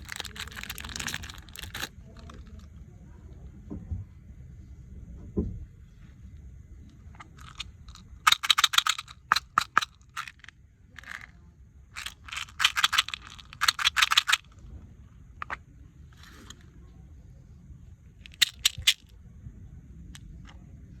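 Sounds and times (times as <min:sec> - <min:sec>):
small hard objects rattling: 0:00.0 - 0:02.6, 0:07.2 - 0:11.3, 0:12.0 - 0:14.5, 0:18.2 - 0:19.1.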